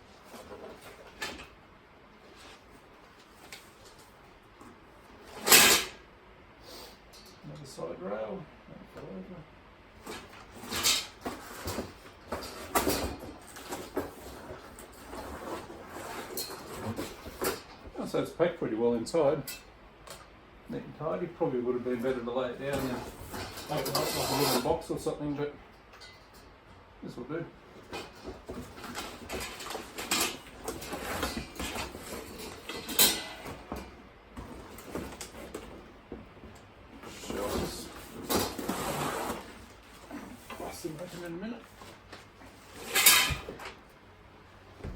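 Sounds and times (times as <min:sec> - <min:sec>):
cardboard and metal parts scraping: 0:02.3 - 0:06.0, 0:10.0 - 0:17.9, 0:22.6 - 0:24.8, 0:27.8 - 0:43.9.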